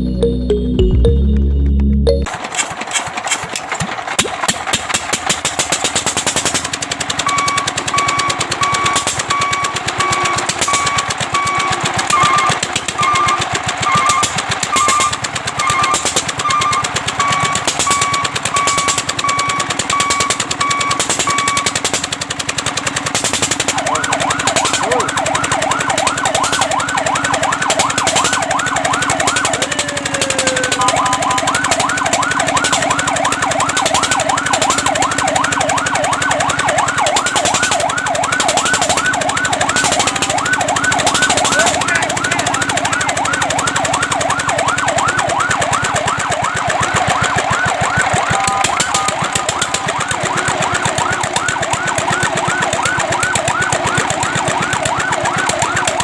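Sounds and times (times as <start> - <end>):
fire truck siren yelping: 5.7 - 56.0.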